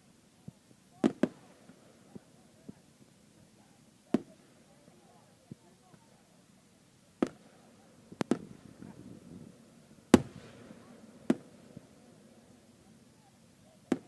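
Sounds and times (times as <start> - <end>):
fireworks bangs: 1.0 - 2.9, 4.1 - 6.0, 7.2 - 14.0.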